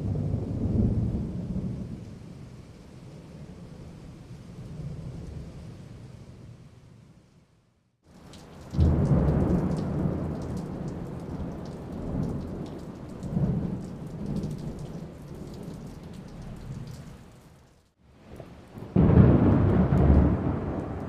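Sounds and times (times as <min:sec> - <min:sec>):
thunder crack and rumble: 0:00.0 - 0:02.2, 0:08.6 - 0:17.0, 0:18.2 - 0:21.0
rain hiss: 0:08.1 - 0:21.0.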